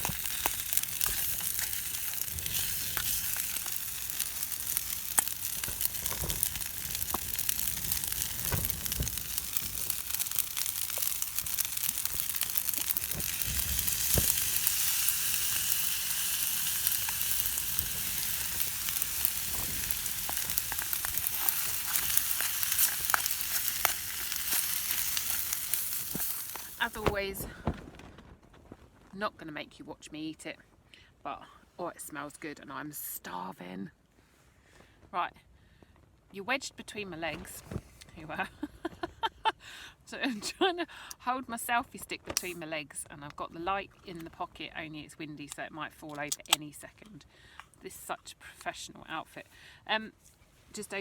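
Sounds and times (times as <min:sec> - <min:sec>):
vegetables sizzling in a pot: 0:00.0 - 0:27.4.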